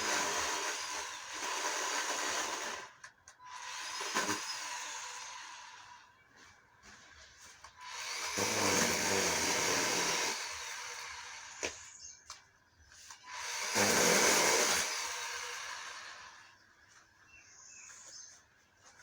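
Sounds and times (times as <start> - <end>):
electric chainsaw revving: 0.0 - 6.0, 7.8 - 11.9, 13.2 - 16.5.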